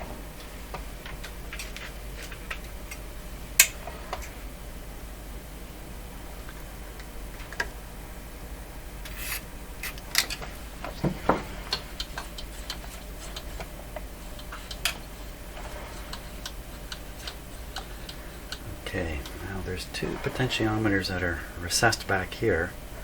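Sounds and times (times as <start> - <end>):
steady low hum: 0.0 - 23.0
hands handling tools clicking: 15.6 - 19.4.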